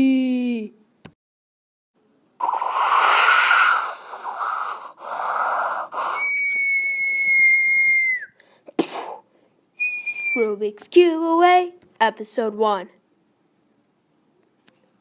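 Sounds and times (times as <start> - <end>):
breathy hissing through mouth: 2.4 - 6.4.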